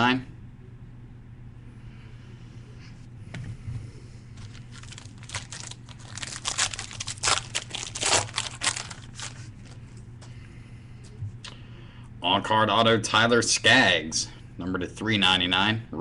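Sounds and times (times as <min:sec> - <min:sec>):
packaging crinkling and tearing: 0:04.4 - 0:09.8.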